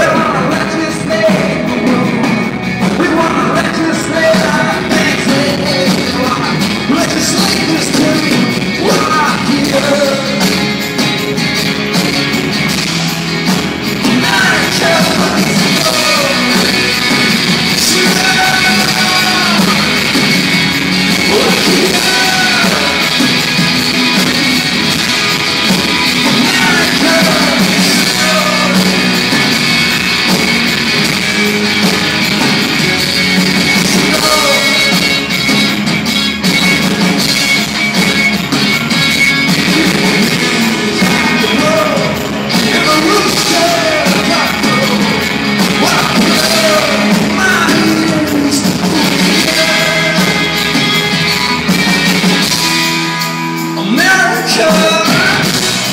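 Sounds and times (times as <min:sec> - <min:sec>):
man singing lead: 0:00.0 - 0:11.0, 0:13.9 - 0:30.2, 0:33.5 - 0:35.4, 0:39.5 - 0:51.6, 0:53.6 - 0:55.9
live rock band playing: 0:00.0 - 0:55.9.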